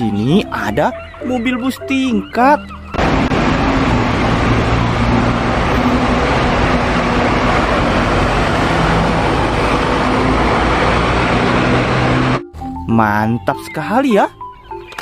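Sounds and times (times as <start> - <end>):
road noise: 0.0 - 15.0
bus engine rumble: 2.2 - 12.7.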